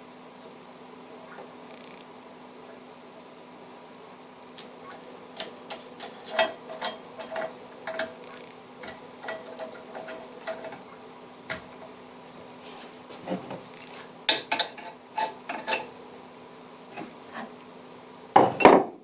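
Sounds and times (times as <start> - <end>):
steady low hum: 0.0 - 18.6
metal tools clicking and tapping: 5.4 - 10.9, 11.5 - 11.8, 14.3 - 15.9.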